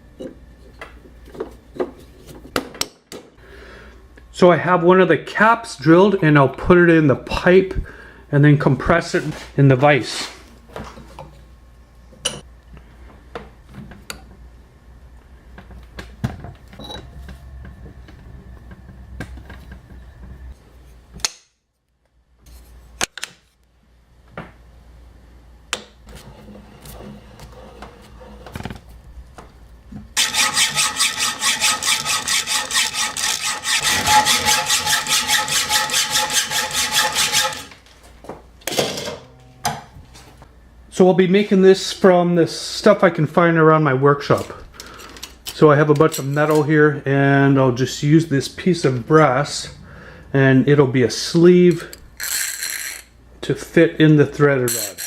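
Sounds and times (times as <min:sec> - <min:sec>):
hand tool rasping on workpiece: 0:30.2 - 0:37.8.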